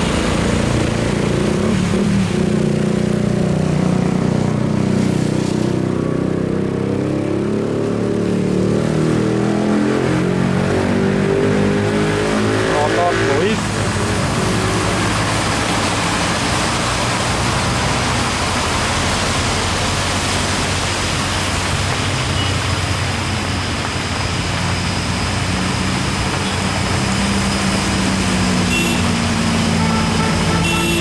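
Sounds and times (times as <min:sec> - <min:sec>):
truck diesel engine climbing: 0:08.7 - 0:31.0.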